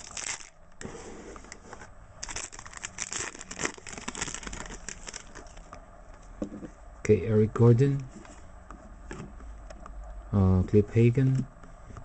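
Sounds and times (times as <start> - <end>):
wrapper crinkling and tearing: 0.0 - 0.6, 2.2 - 5.6.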